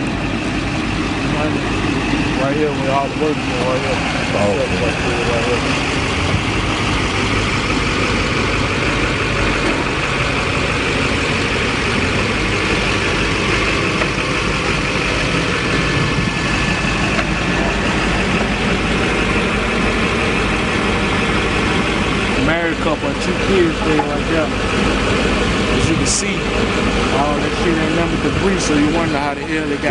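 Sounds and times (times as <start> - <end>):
constant rushing noise: 0.0 - 29.9
vehicle engine running: 0.0 - 29.9.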